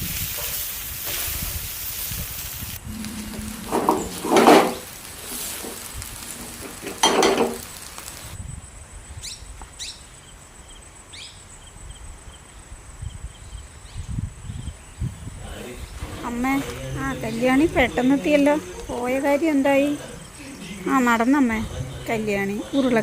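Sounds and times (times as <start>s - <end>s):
food sizzling in a pan: 0.0s - 8.4s, 15.4s - 23.0s
high falling chirps: 2.8s - 8.4s.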